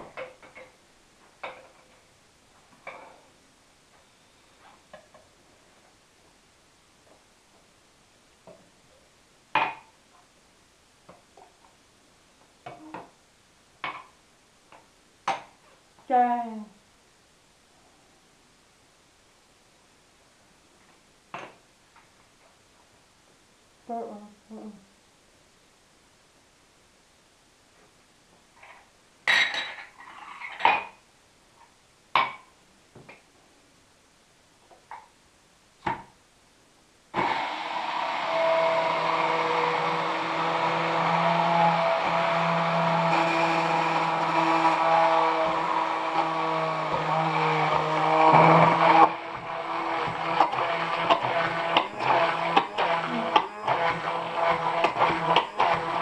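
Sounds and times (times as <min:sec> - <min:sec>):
electric blender running: 0:37.2 - 0:56.0.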